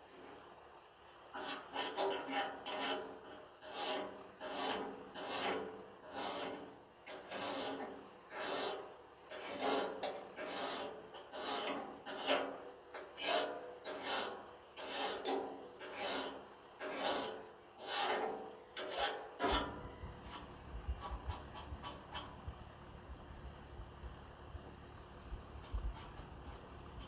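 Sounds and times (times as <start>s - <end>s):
metal file rasping on steel: 1.3s - 22.4s.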